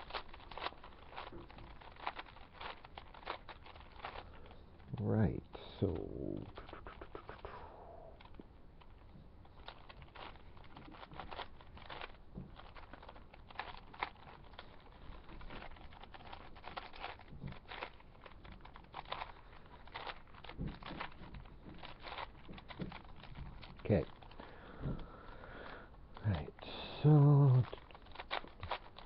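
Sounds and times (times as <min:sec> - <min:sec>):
puzzle cube clicking and scraping: 0:00.0 - 0:29.0.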